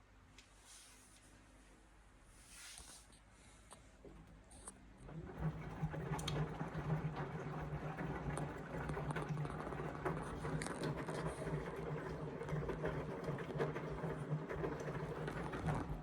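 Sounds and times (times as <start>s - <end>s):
drain pump humming: 4.9s - 16.0s
water gurgling: 5.0s - 16.0s.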